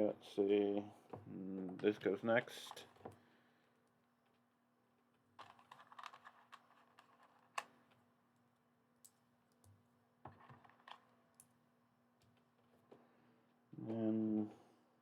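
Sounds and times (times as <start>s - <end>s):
faint steady hum: 0.0s - 15.0s
plastic building pieces clicking: 5.4s - 8.0s, 10.3s - 11.5s.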